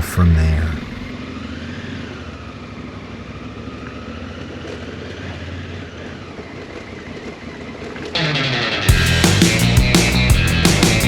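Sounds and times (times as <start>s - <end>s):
motorcycle engine running: 1.1s - 11.0s.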